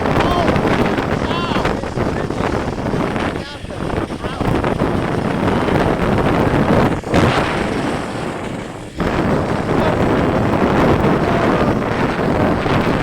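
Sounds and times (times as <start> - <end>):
strong wind on microphone: 0.0 - 13.0.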